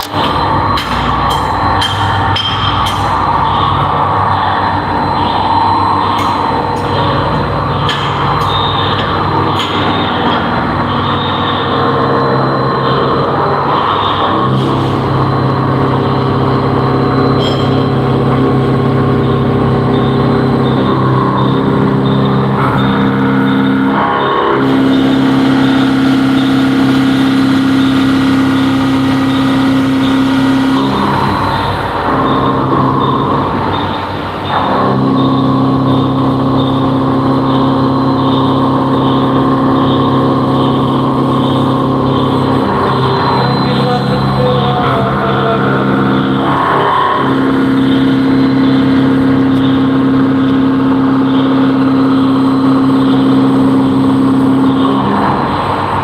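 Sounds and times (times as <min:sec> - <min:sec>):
milling machine humming: 0:00.0 - 0:56.0.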